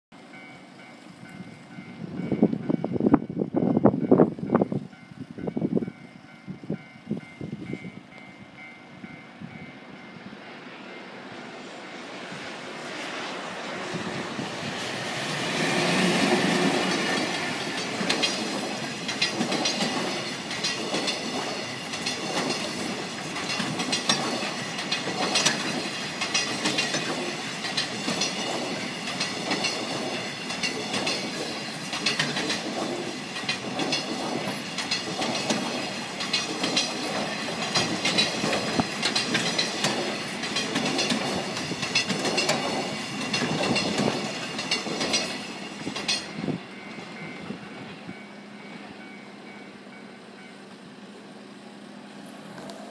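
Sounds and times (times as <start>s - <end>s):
freight train passing: 0.1s - 52.9s
wagon wheels clattering over rail joints: 16.8s - 46.3s.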